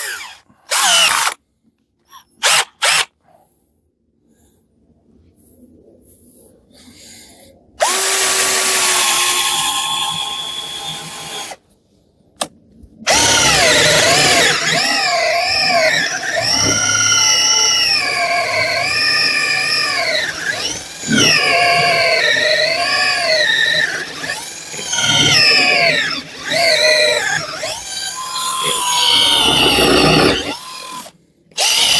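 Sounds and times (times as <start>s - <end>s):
cordless drill motor whining: 0.0s - 1.4s, 7.8s - 11.6s, 13.1s - 31.9s.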